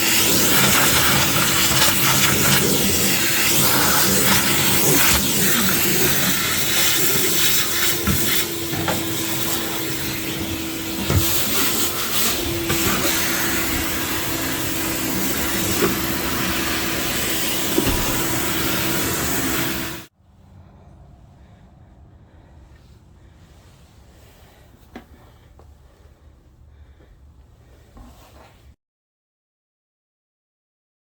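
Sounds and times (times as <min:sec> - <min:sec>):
vacuum cleaner running: 0:00.0 - 0:20.1.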